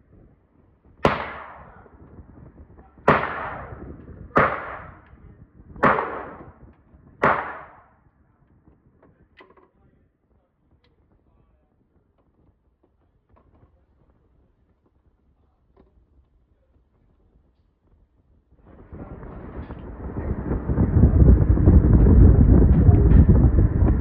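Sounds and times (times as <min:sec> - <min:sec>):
gunshots echoing: 0:01.0 - 0:01.9, 0:03.1 - 0:05.1, 0:05.8 - 0:06.6, 0:07.2 - 0:07.9.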